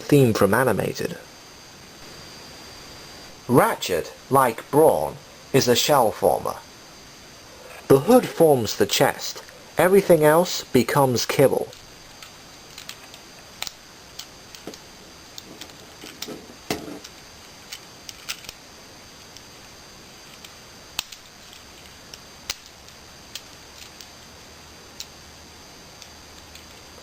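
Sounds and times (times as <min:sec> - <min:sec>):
plastic toy parts clicking: 0:11.7 - 0:16.3, 0:17.0 - 0:18.6, 0:20.3 - 0:24.3, 0:25.0 - 0:25.2.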